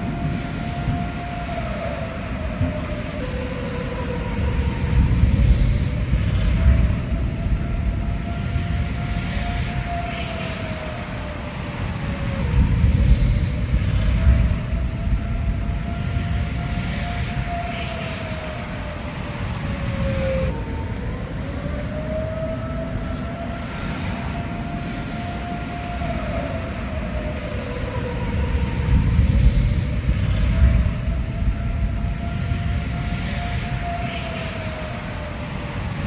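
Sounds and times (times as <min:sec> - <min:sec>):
tornado siren wailing: 0:00.0 - 0:36.0
low rumbling noise: 0:28.1 - 0:33.2.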